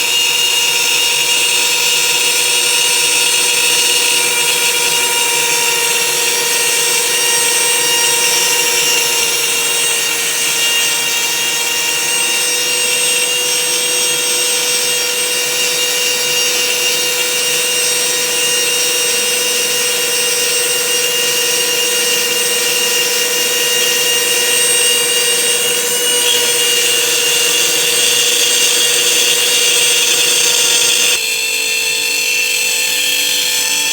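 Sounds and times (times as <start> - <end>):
router spindle whine: 0.0 - 33.9
bit cutting wood hiss: 20.2 - 31.2.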